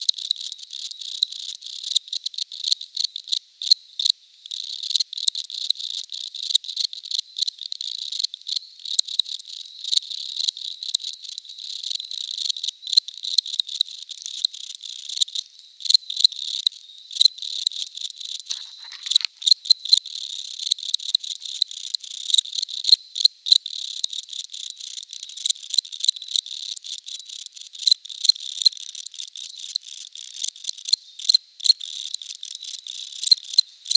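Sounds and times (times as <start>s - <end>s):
crickets chirping: 6.9s - 33.9s.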